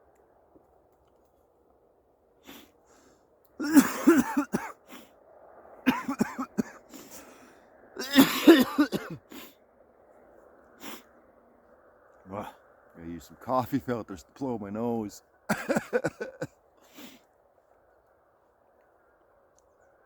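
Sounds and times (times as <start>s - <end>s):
man coughing: 3.6s - 4.8s, 5.9s - 6.8s, 8.0s - 9.2s, 15.5s - 16.5s.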